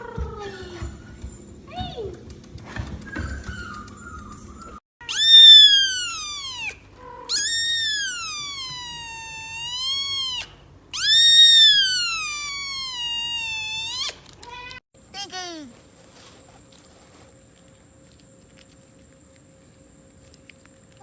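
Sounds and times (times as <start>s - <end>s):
animal high drawn-out cries: 5.0s - 14.8s.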